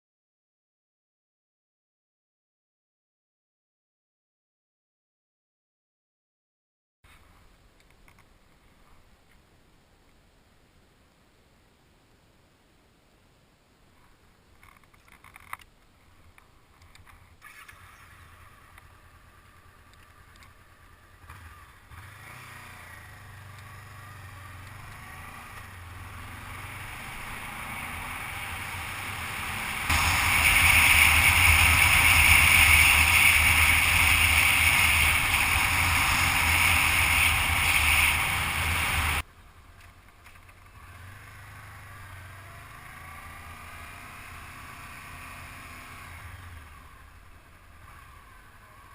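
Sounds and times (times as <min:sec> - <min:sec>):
motorcycle engine running: 0:20.6 - 0:39.2.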